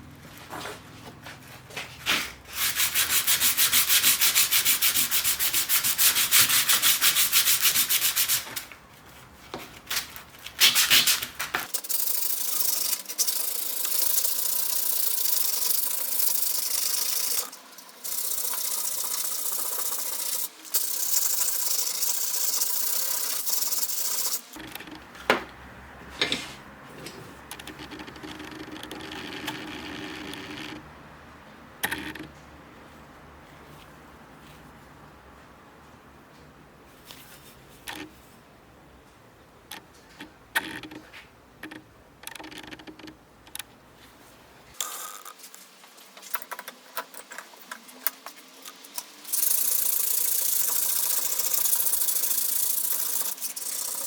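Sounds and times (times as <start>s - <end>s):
sanding rubbing: 2.5s - 8.6s, 49.3s - 54.0s.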